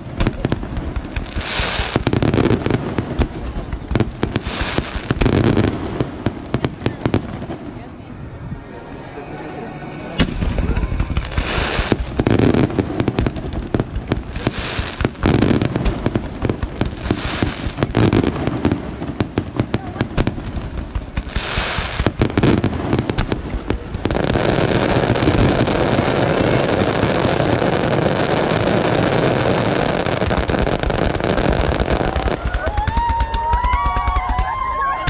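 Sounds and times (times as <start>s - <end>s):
fireworks bangs and crackles: 0.0s - 35.0s.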